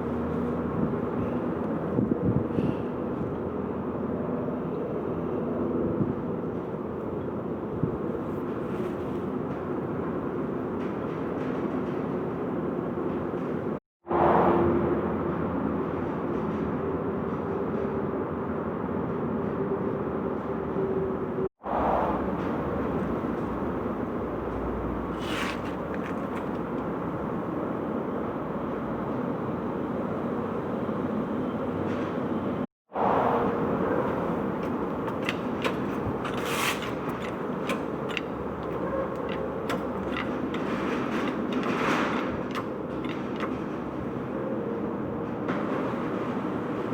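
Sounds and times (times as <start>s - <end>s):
bearing whine: 21.7s - 32.6s, 33.2s - 44.0s
car rolling rumble: 22.0s - 32.6s, 33.4s - 44.3s.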